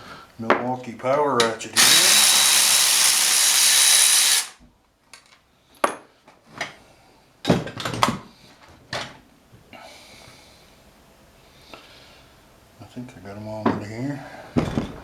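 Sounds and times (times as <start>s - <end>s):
power ratchet running: 1.8s - 4.6s.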